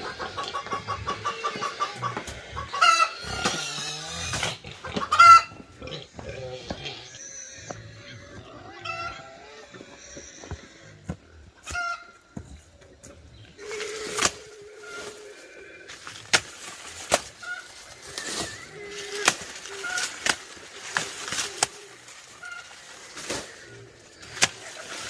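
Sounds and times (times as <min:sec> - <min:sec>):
chickens clucking and peeping: 0:00.0 - 0:25.0.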